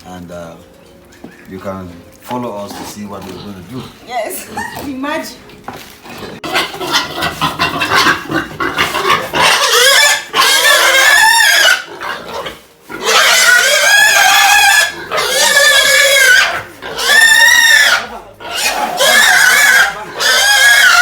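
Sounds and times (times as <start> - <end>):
pig squealing loudly: 2.7 - 5.0, 6.0 - 21.0.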